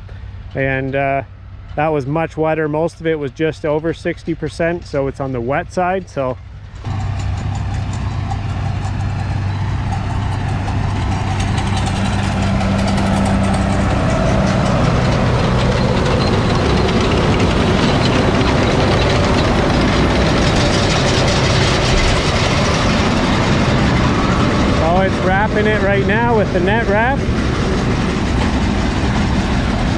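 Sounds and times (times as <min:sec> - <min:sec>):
tractor engine droning: 0:06.6 - 0:29.9.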